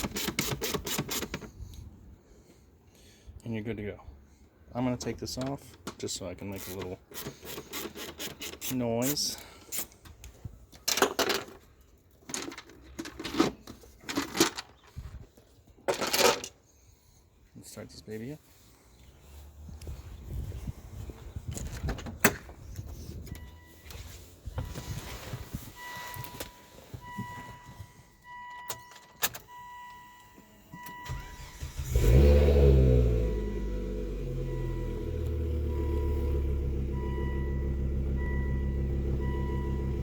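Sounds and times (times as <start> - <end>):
car warning chime beeping: 23.3 - 31.8, 33.1 - 40.0
car engine starting: 30.7 - 40.0.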